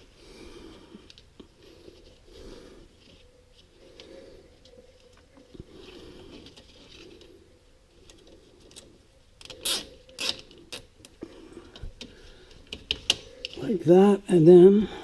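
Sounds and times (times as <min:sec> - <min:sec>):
handling of wires: 0:00.0 - 0:14.7
zip tie ratcheting clicks: 0:09.4 - 0:10.9.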